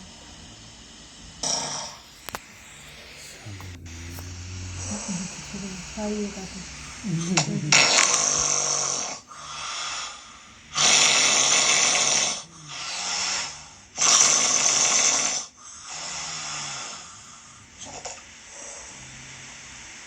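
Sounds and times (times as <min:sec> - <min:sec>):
quiet breaths: 0:00.0 - 0:20.0
person snoring heavily: 0:01.4 - 0:13.6.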